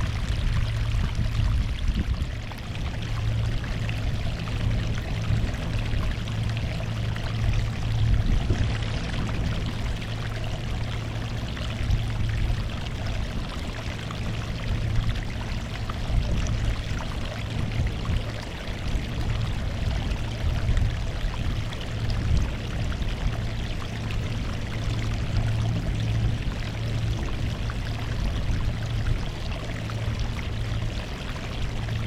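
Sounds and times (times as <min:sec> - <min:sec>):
low constant rumble: 0:00.0 - 0:32.0
sea waves washing onto shore: 0:00.0 - 0:32.0.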